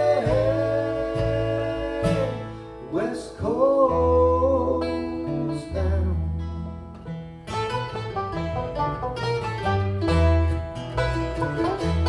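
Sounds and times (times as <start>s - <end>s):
banjo: 0.0s - 2.9s, 3.6s - 12.0s
person singing: 0.0s - 6.3s
acoustic guitar: 0.0s - 12.0s
bass line: 0.0s - 12.0s.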